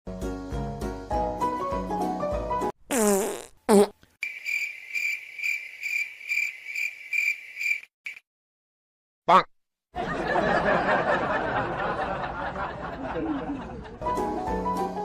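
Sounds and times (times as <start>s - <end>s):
music: 0.1s - 2.8s, 14.0s - 15.0s
prank fart sound: 2.9s - 4.0s
crickets chirping: 4.2s - 8.2s.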